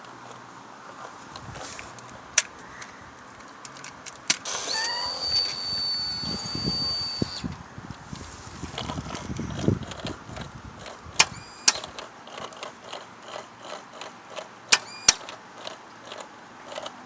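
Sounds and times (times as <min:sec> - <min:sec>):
starter clicks: 0:01.0 - 0:08.0, 0:08.8 - 0:17.0
high-pitched electrical whine: 0:04.4 - 0:07.6.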